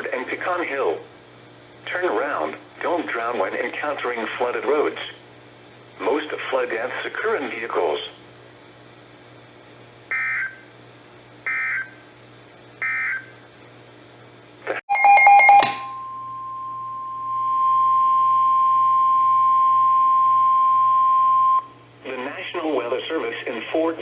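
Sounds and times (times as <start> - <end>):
steady alert tone: 14.9 - 16.2.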